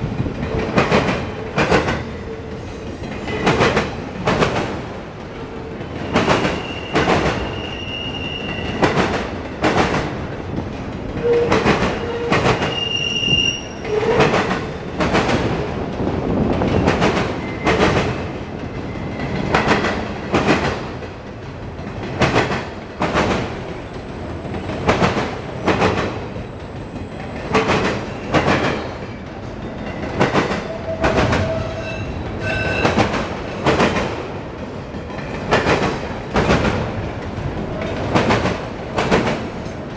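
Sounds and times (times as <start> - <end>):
train wheels clicking over rail joints: 0.0 - 7.7, 13.8 - 39.9
train rumble: 0.0 - 39.9
high-pitched wheel squeals: 6.0 - 8.9, 12.0 - 14.2, 30.9 - 33.0.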